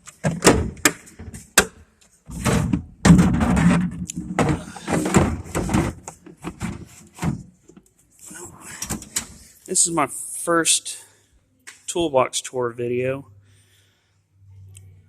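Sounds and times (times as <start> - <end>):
drawers knocking shut: 2.3 - 7.4
steel drawers sliding: 2.3 - 7.4.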